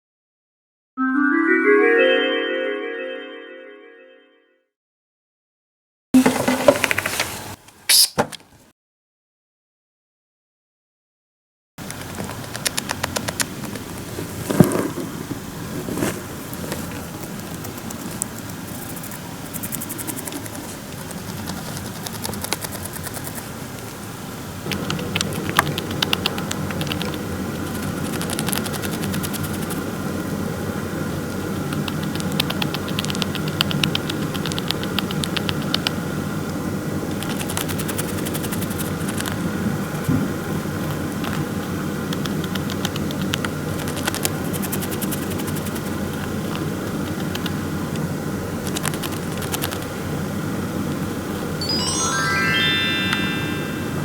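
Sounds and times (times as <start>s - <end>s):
hamster grinding teeth: 12.0s - 14.9s, 16.5s - 23.5s, 24.7s - 29.9s, 31.6s - 35.9s, 37.1s - 47.6s, 48.6s - 49.9s.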